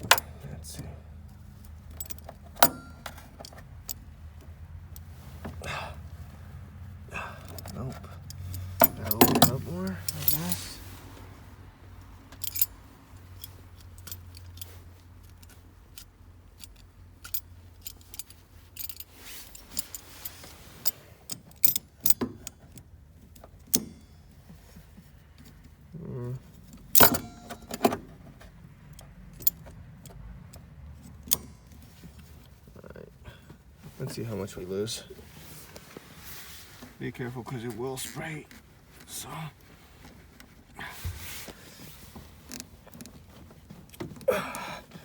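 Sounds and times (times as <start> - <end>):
metallic clicks of hand tools: 2.0 - 3.6, 26.8 - 28.0.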